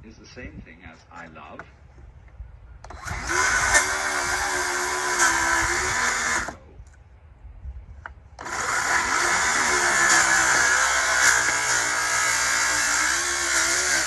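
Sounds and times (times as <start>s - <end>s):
power tool cutting wood: 2.9s - 6.6s, 8.4s - 14.0s.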